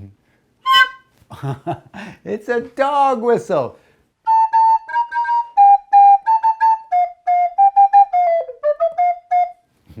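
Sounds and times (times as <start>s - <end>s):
homemade whistle playing tune: 0.6s - 1.1s, 4.2s - 9.8s.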